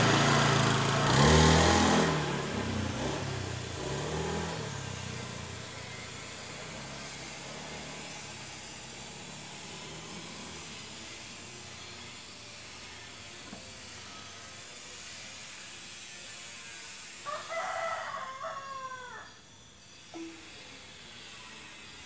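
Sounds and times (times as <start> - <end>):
rooster crowing: 17.2 - 19.5.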